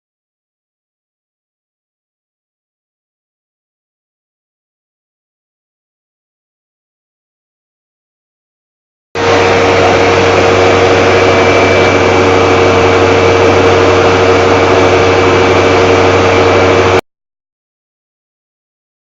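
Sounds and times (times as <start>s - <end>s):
motor whining: 9.2s - 17.0s.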